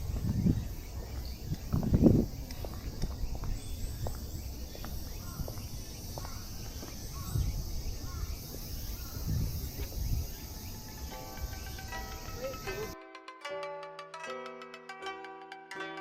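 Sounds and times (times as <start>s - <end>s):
soft ticks like footsteps: 0.0s - 10.1s
high hiss: 3.6s - 13.0s.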